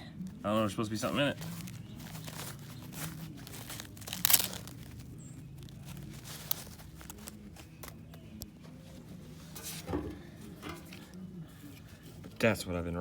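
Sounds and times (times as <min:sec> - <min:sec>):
parts rustling and scraping: 0:00.5 - 0:12.6.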